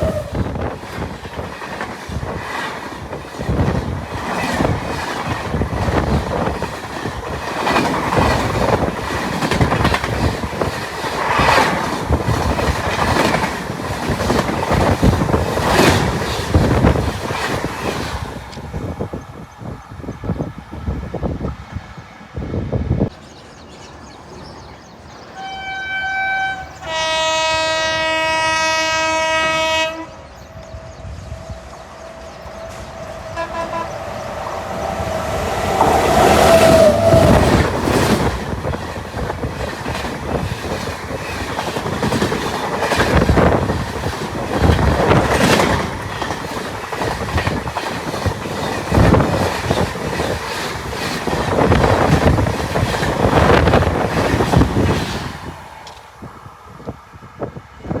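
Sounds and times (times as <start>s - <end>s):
train horn: 0.0s - 0.6s, 25.4s - 30.8s, 33.3s - 34.2s
train coaches rushing past: 0.0s - 58.0s
wheels clattering over rail joints: 0.6s - 18.7s, 35.0s - 56.2s.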